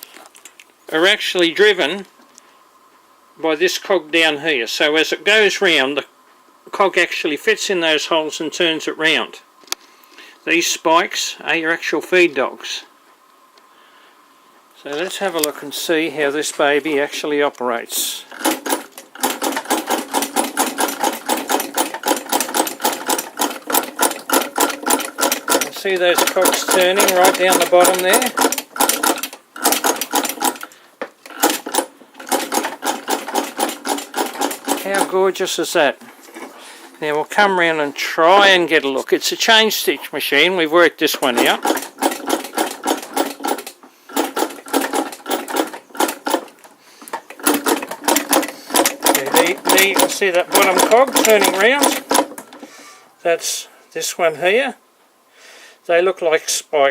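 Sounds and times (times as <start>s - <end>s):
sewing machine clacking: 18.3s - 35.2s, 41.1s - 52.6s.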